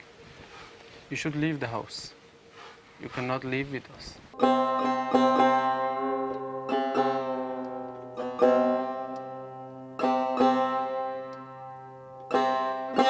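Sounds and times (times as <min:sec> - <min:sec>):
plucked long-necked lute: 0:04.4 - 0:13.0.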